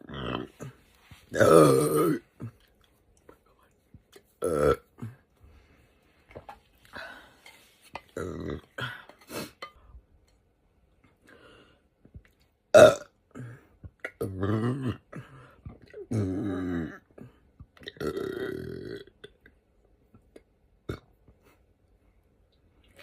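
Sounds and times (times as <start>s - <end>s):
woman burping: 1.3s - 2.6s, 4.4s - 5.2s, 12.7s - 15.2s, 17.8s - 19.1s.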